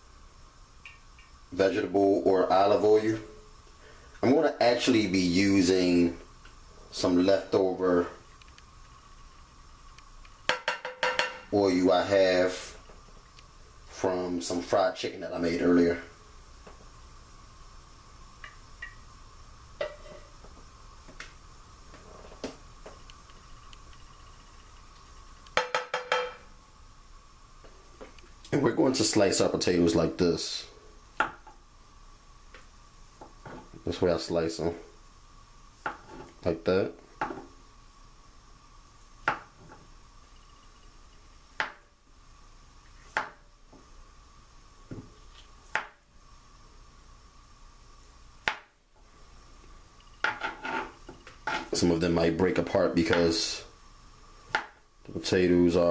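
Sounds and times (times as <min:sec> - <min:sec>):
faint steady hum: 0:00.0 - 0:55.9
dishes and utensils clinking: 0:25.6 - 0:26.4.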